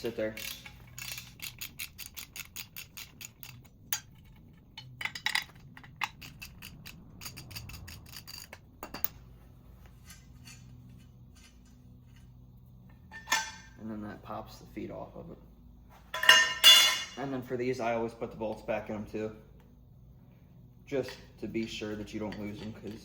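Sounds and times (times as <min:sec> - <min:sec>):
hand ratchet clicking: 0:00.0 - 0:08.6
metal clicks and knocks: 0:00.2 - 0:09.2.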